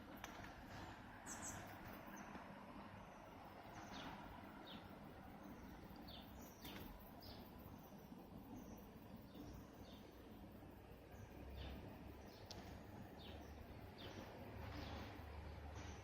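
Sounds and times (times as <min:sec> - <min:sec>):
faint bird chirps: 0:01.2 - 0:02.4.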